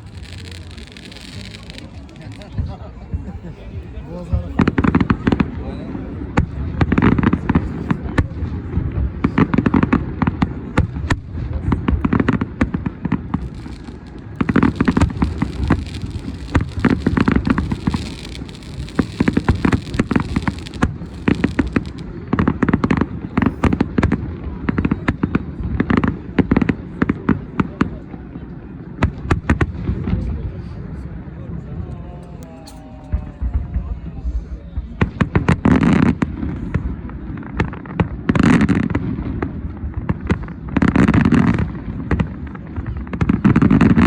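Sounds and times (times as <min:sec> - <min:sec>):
fireworks exploding: 0:00.0 - 0:05.6, 0:06.2 - 0:27.8, 0:33.1 - 0:44.0
fireworks crackling and sizzling: 0:00.0 - 0:27.2.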